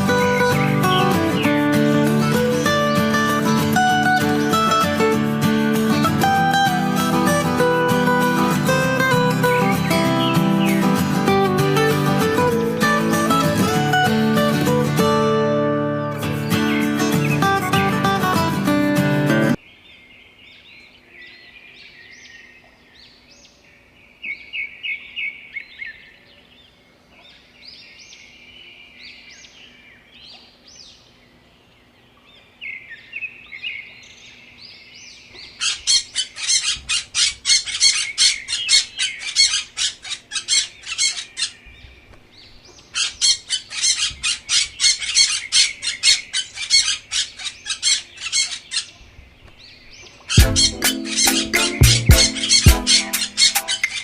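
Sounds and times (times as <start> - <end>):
birds rapid chattering: 0.0 - 7.5, 35.3 - 54.0
birds chirping and twittering: 0.0 - 15.1, 15.9 - 54.0.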